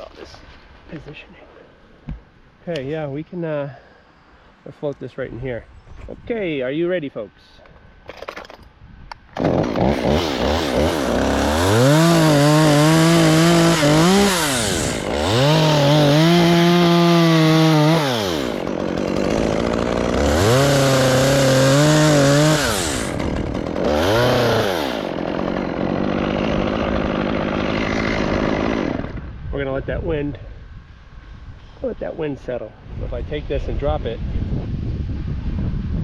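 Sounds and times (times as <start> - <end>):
chainsaw revving and cutting: 9.4 - 29.2.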